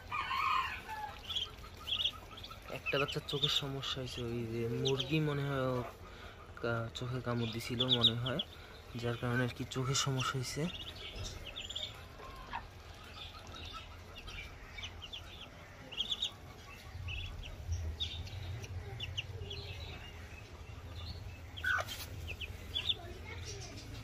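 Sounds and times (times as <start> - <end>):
ducklings peeping: 0.0 - 24.0
low steady rumble: 10.8 - 24.0.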